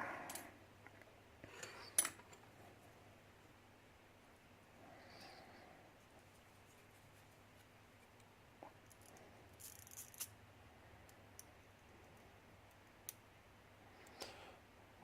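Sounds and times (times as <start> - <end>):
small lock parts clicking: 8.8 - 10.3.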